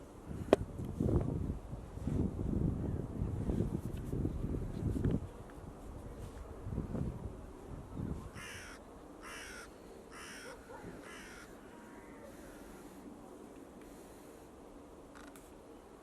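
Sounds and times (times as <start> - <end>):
crow cawing: 8.4 - 12.9.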